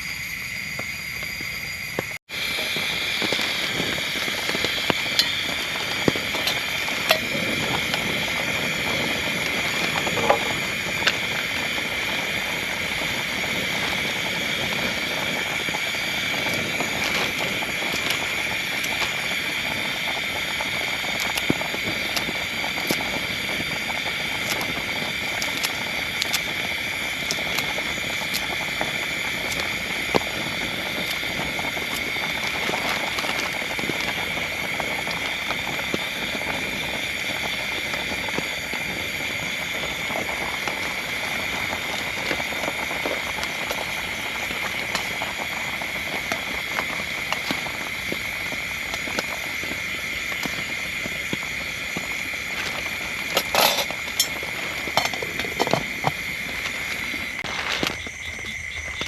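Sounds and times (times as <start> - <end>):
heavy rain hissing: 0.0 - 58.4
raindrops striking as ticks: 27.2 - 36.1.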